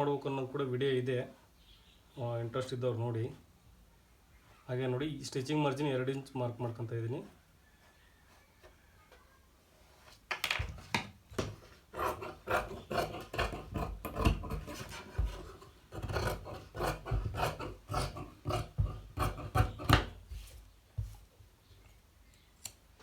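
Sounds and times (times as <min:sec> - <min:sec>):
scraping strokes on fabric: 0:11.6 - 0:21.3.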